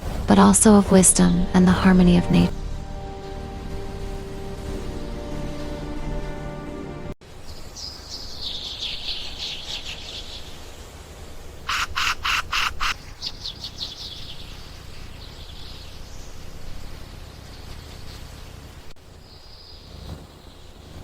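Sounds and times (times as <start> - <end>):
small birds chattering: 7.5 - 10.6, 11.7 - 16.5
loud harsh bird calls: 11.7 - 16.0.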